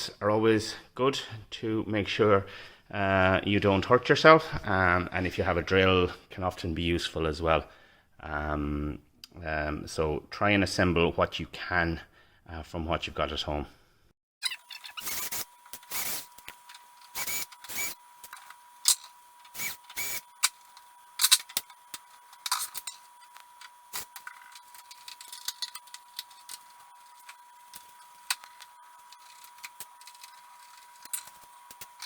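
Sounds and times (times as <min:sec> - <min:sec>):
metal hand tools clinking: 0:21.2 - 0:21.7, 0:22.3 - 0:31.4.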